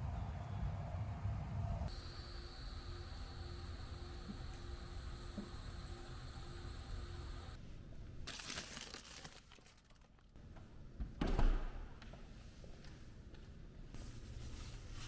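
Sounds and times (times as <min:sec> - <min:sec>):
crinkling and rustling: 0:08.2 - 0:10.4.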